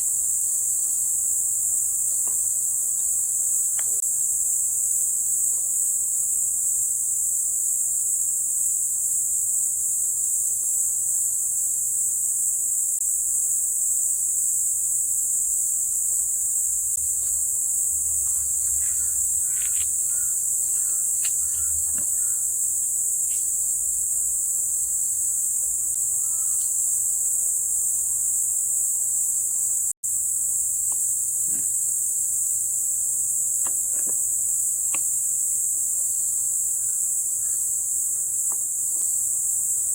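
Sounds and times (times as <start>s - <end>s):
crickets chirping: 0.0s - 39.9s
faint ticks: 23.3s - 23.6s.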